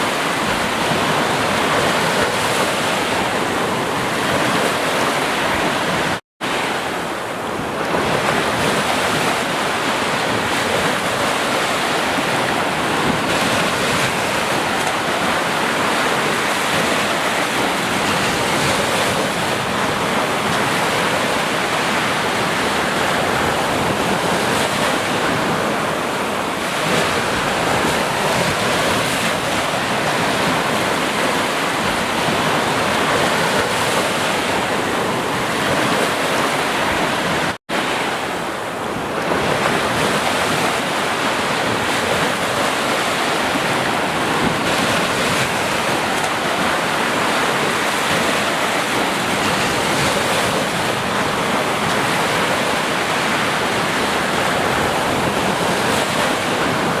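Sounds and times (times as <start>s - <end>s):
sea surf washing: 0.0s - 57.0s.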